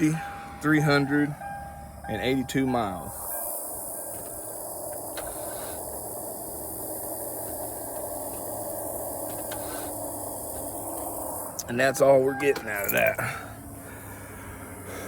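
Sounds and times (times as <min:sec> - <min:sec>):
steady hiss: 0:03.0 - 0:11.7.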